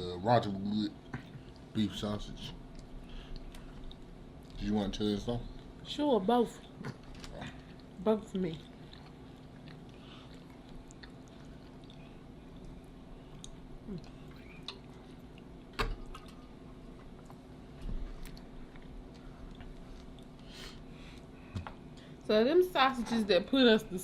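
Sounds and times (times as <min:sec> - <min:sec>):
person chewing food: 0:06.6 - 0:22.0
small mouth clicks: 0:13.4 - 0:15.5.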